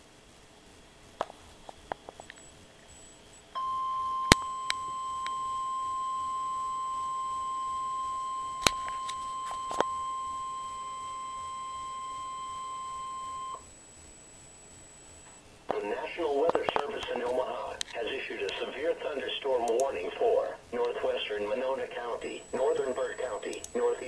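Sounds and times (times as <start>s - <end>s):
faint radio hiss: 0.0s - 24.0s
static crackles: 0.0s - 24.0s
high steady alarm beep: 2.9s - 15.2s.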